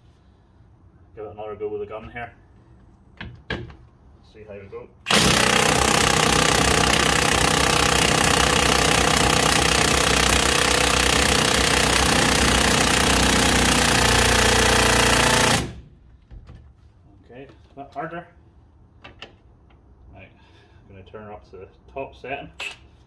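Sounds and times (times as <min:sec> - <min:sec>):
impact wrench hammering: 0:05.1 - 0:15.9.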